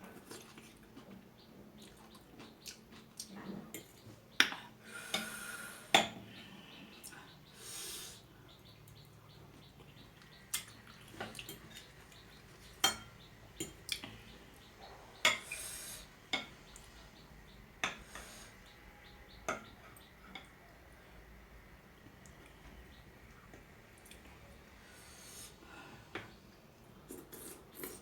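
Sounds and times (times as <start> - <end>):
cutlery clinking against bowl: 3.7 - 5.3, 12.8 - 13.9.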